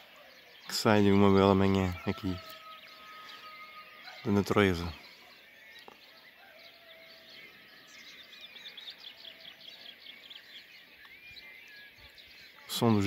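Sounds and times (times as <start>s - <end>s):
songbirds chirping and trilling: 0.0s - 13.0s.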